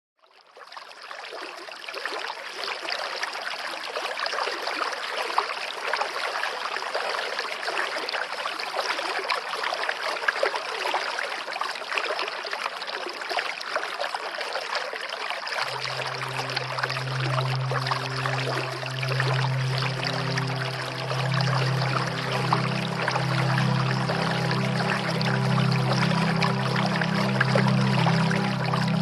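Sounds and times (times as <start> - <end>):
low held musical note: 15.6 - 29.0
waterfall rushing and splashing: 15.6 - 29.0.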